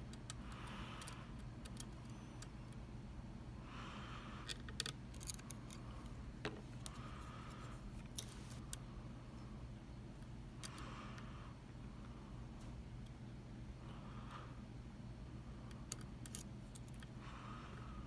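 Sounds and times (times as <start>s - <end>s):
steady low hum: 0.0s - 18.0s
lock pick clicking and scraping: 0.1s - 2.8s, 4.4s - 6.1s, 15.9s - 17.1s.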